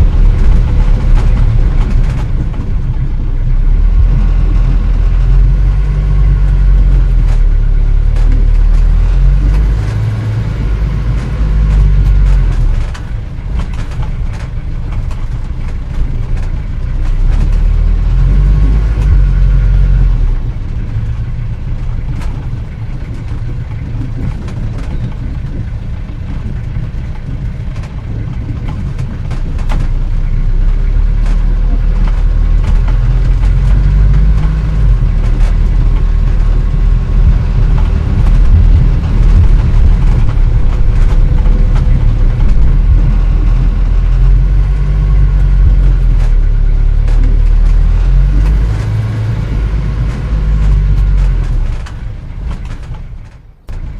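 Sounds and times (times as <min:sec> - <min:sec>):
old car engine rumbling: 0:00.0 - 0:53.9
small clicks and knocks: 0:22.0 - 0:53.9.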